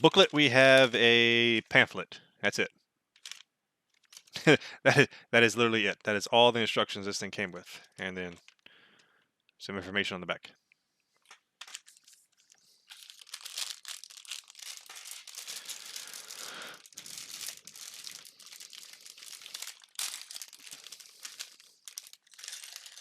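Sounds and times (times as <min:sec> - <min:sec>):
plastic bag crinkling: 0:03.2 - 0:03.4, 0:04.0 - 0:04.4, 0:11.6 - 0:23.0.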